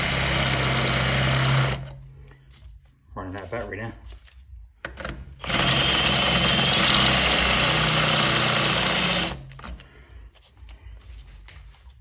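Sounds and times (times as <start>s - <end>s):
cordless power tool grinding metal: 0.0s - 2.0s, 5.4s - 9.6s.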